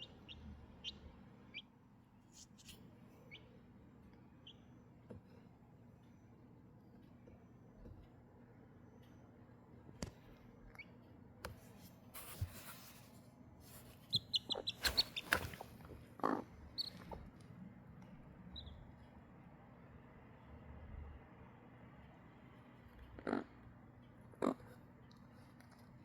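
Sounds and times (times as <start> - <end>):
chicks peeping: 0.0 - 1.7, 13.9 - 17.3, 18.5 - 18.9.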